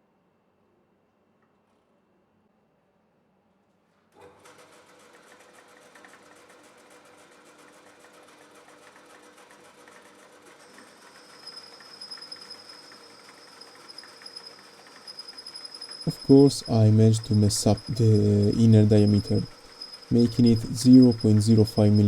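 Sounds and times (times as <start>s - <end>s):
machine tool cutting metal: 10.6s - 22.0s
high steady whine: 15.5s - 22.0s.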